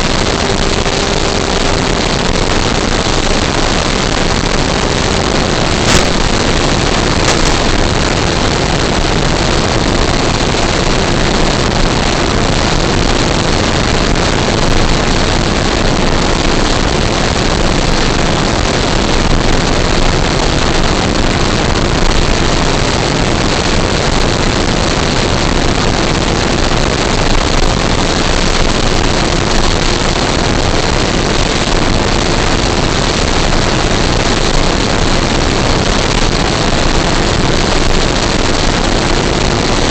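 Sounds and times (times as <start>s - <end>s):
model airplane propeller noise: 0.0s - 39.9s
sharp click: 5.9s - 6.6s, 7.2s - 7.8s.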